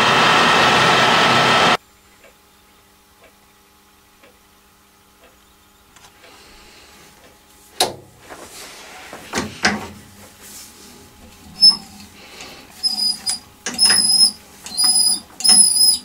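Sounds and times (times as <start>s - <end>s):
faint steady hum: 1.6s - 16.0s
soft ticks: 4.2s - 4.4s, 5.2s - 5.4s
sharp knocks and scrapes of metal: 11.3s - 16.0s.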